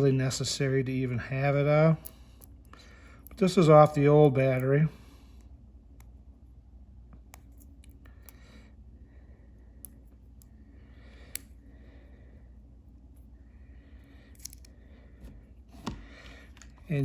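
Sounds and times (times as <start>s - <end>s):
low steady hum: 0.0s - 17.0s
small parts clicking and rustling: 14.3s - 14.8s.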